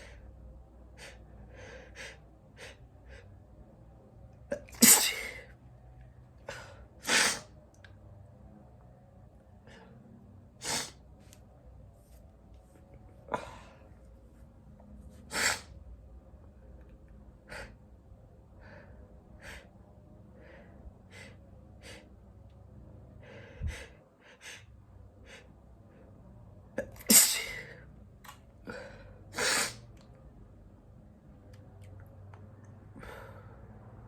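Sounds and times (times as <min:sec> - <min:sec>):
man sneezing: 0:04.5 - 0:05.5, 0:26.9 - 0:27.7.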